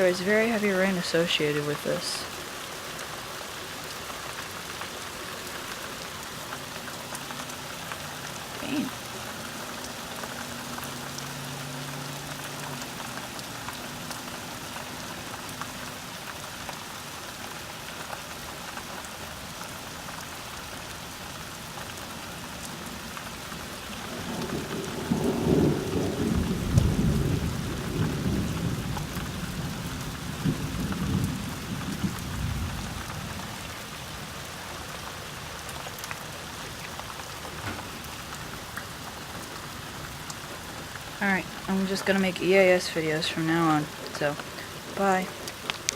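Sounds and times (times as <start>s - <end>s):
steady rain: 0.0s - 45.9s
thunder rumble: 23.9s - 33.9s.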